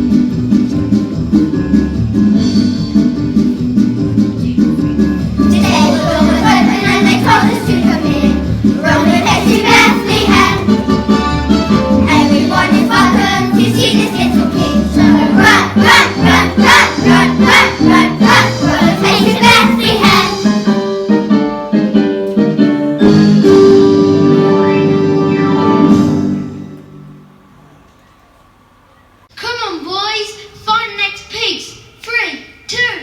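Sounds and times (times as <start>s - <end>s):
instrumental accompaniment: 0.0s - 28.4s
children singing: 5.5s - 11.0s, 12.0s - 20.6s.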